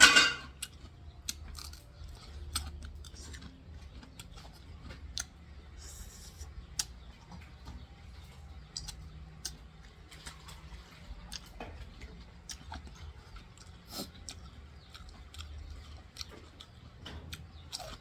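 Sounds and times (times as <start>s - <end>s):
low steady hum: 0.0s - 18.0s
person chewing: 0.4s - 7.9s, 8.5s - 18.0s.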